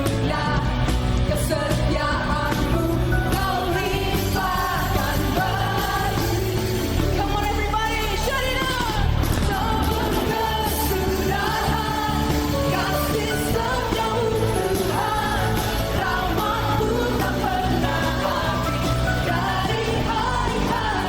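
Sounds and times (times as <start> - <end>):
low bass: 0.0 - 21.0
worship song with band: 0.0 - 21.0.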